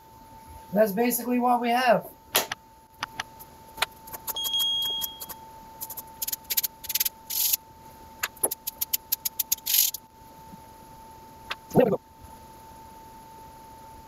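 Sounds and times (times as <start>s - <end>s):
small parts clicking: 3.0s - 7.6s, 8.2s - 10.0s
short high beep: 4.3s - 5.4s.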